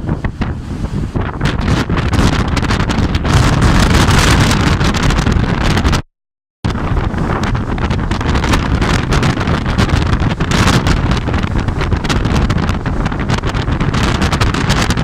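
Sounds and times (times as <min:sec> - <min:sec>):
strong wind buffeting microphone: 0:00.0 - 0:06.0, 0:06.7 - 0:15.0.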